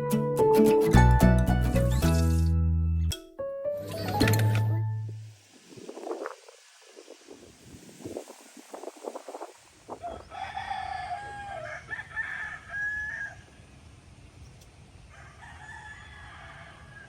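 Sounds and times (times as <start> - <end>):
rooster crowing: 9.9 - 13.6, 15.1 - 17.0.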